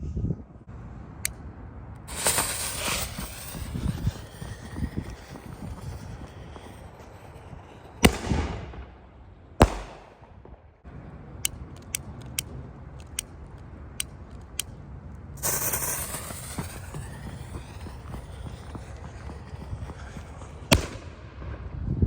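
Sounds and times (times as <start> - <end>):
loud hissing rush: 2.1 - 8.2, 15.4 - 20.8
firework bangs with echo: 2.1 - 10.7, 15.4 - 21.8
small sharp firework cracks: 2.1 - 10.8, 15.4 - 21.8.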